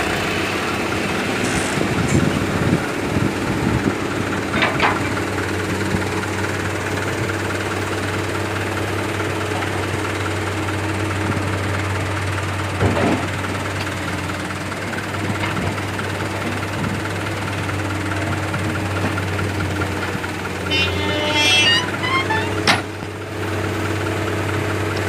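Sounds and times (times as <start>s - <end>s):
diesel engine humming: 0.0s - 25.0s.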